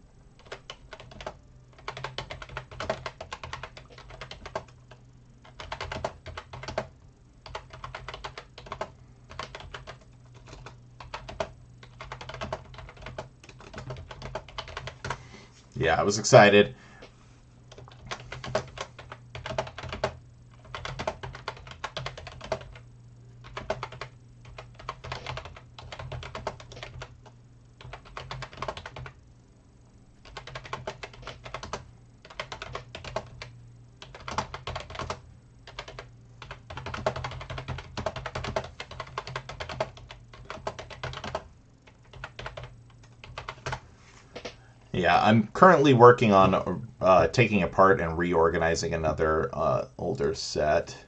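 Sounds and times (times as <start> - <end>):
rapid small clicks and clatter: 0.4 - 6.9, 7.5 - 15.2, 17.7 - 22.8, 23.5 - 29.2, 30.2 - 43.8.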